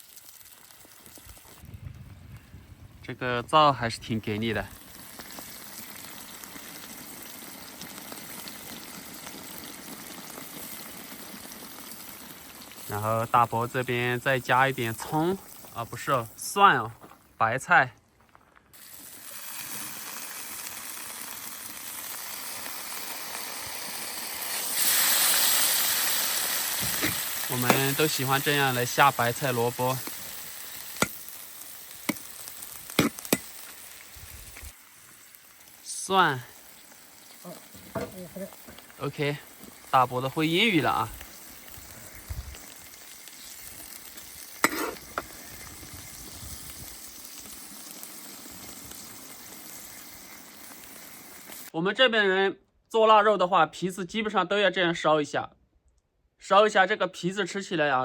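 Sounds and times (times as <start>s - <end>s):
stir-fry sizzling in a wok: 18.8s - 51.8s.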